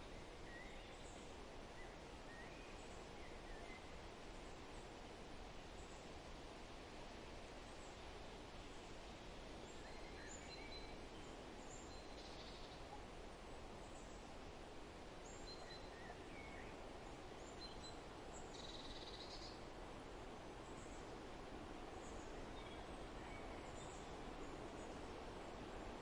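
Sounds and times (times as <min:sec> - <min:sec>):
background hiss: 0:00.0 - 0:26.0.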